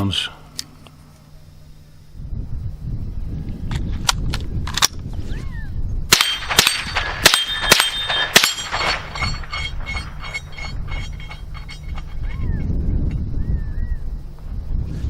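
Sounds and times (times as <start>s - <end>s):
rifle shots: 6.1s - 11.7s
steel target ringing ping: 6.1s - 12.5s.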